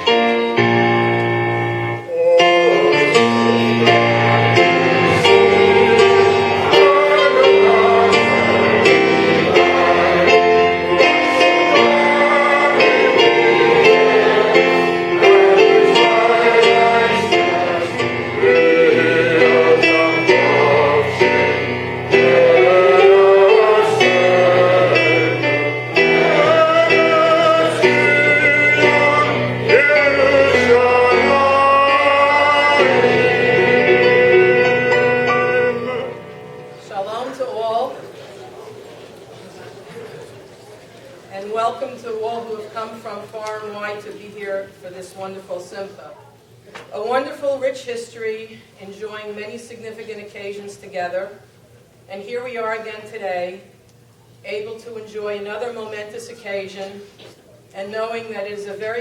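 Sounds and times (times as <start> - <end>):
instrumental accompaniment: 0.0 - 37.1
voices singing: 2.1 - 37.0.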